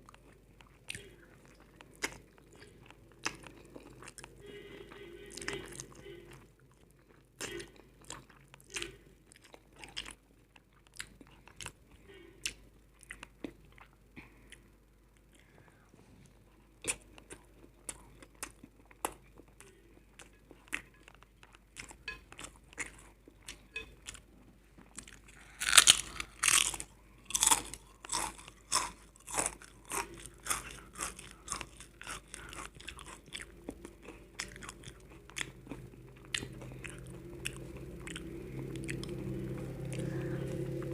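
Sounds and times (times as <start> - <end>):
chewing and crunching: 0.0 - 15.6, 16.2 - 40.9.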